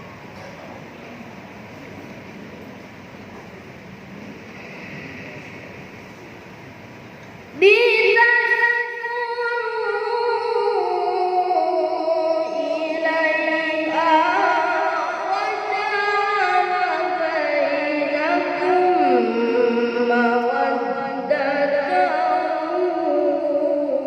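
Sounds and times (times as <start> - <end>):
boy reciting melodically: 7.6 - 24.0.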